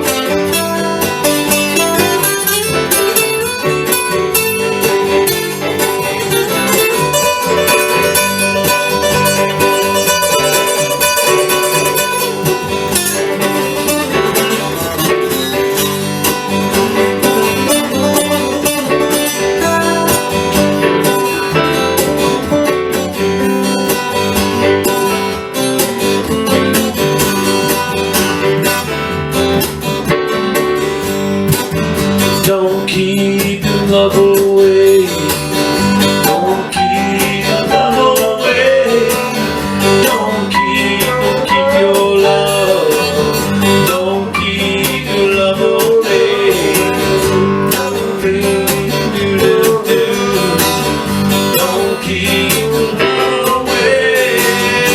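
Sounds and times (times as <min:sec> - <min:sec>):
acoustic guitar strumming: 0:00.0 - 0:54.9
wavering melody line: 0:36.3 - 0:39.1.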